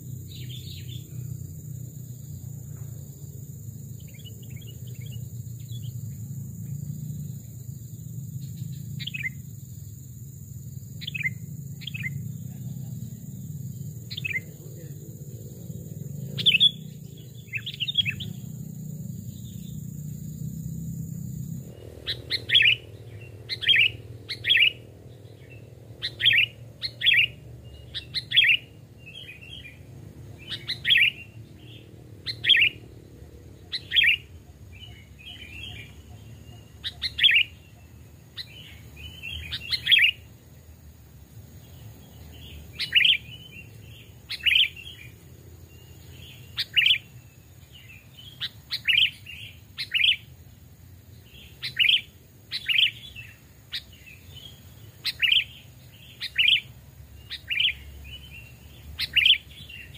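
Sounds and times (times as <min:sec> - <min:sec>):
bulbuls chirping: 0:00.0 - 0:59.9
soft warbled bird notes: 0:11.0 - 0:29.8.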